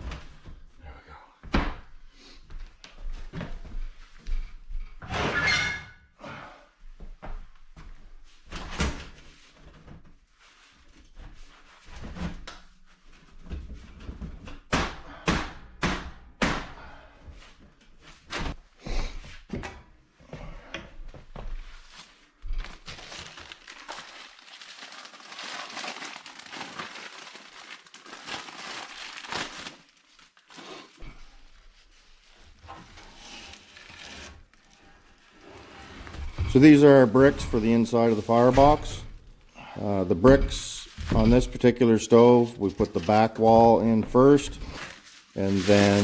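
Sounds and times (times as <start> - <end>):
scraping and rubbing: 30.7 - 39.4, 42.5 - 46.0.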